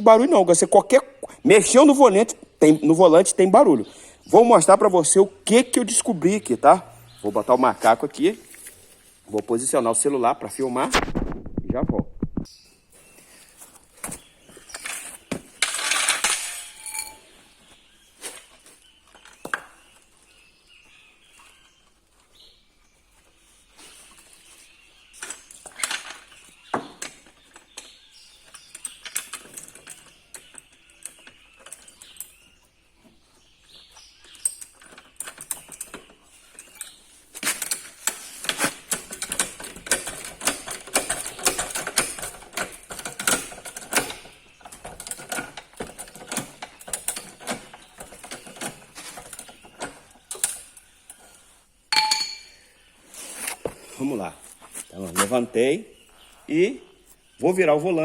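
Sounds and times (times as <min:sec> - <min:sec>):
car jack clicking and rattling: 0:14.8 - 0:17.2, 0:34.3 - 0:51.0
ringing metal clink: 0:15.7 - 0:17.3, 0:51.9 - 0:52.7.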